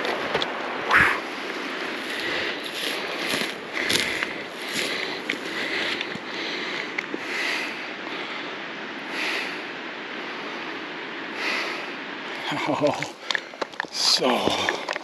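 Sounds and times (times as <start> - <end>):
rustling through brush: 0.0 - 7.9
person breathing hard: 0.9 - 12.4.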